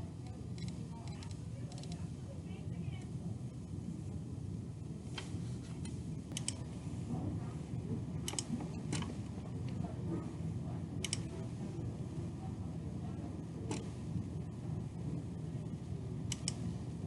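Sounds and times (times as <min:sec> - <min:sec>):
low background hum: 0:00.0 - 0:17.0
computer mouse clicks: 0:00.6 - 0:02.0, 0:05.8 - 0:06.6, 0:11.0 - 0:11.3, 0:16.3 - 0:16.6.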